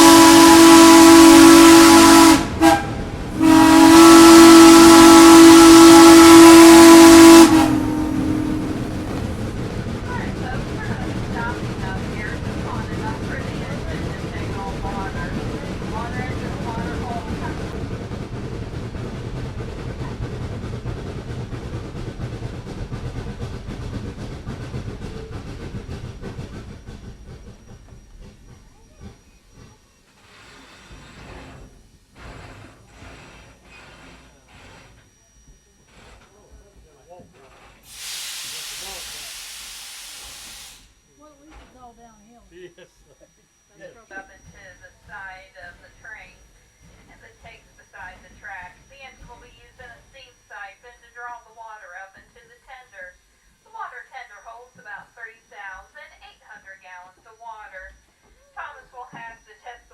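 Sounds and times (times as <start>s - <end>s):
steam locomotive whistle: 0.0s - 10.3s, 37.9s - 41.0s
steam hissing: 0.0s - 36.5s, 37.4s - 41.0s
rail noise: 0.0s - 42.0s
steam train running: 0.0s - 59.9s.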